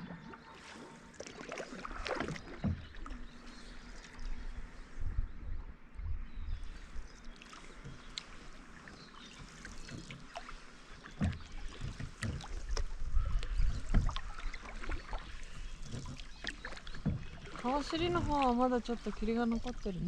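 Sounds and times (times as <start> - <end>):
paddle pulling through water: 0.0 - 20.0
paddle knocks: 2.0 - 3.3, 9.3 - 19.8.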